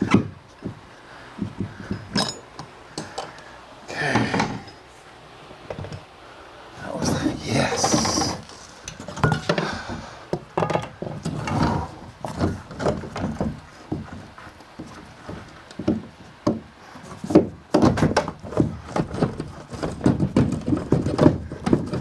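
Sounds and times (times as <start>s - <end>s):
hand tools knocking and clanking: 0.0s - 4.9s, 7.0s - 22.0s.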